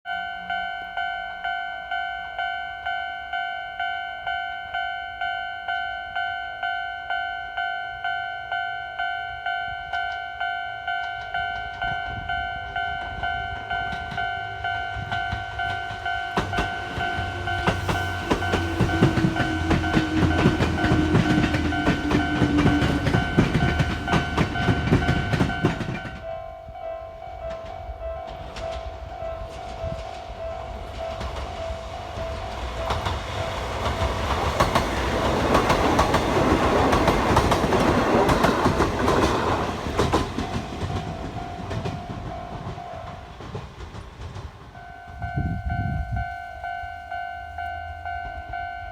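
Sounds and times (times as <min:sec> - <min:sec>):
level-crossing bell dinging: 0:00.1 - 0:43.8, 0:44.7 - 0:48.9
train rumble and hum: 0:09.4 - 0:48.9
train wheels clacking: 0:09.9 - 0:26.5, 0:27.3 - 0:48.9.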